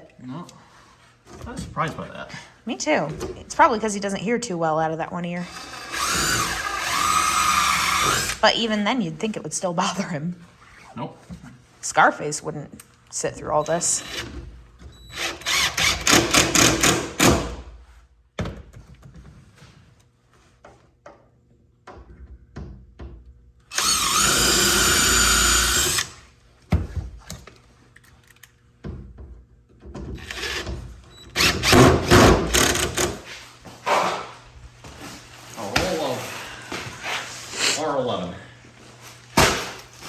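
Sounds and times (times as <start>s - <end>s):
power drill whining: 5.4s - 8.4s, 15.1s - 17.2s, 23.7s - 26.2s, 30.2s - 33.2s.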